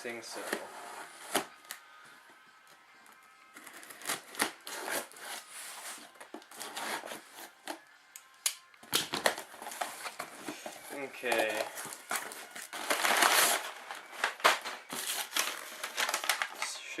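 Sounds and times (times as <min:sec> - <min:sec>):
packaging tearing and rustling: 0:03.5 - 0:07.8, 0:08.9 - 0:17.0.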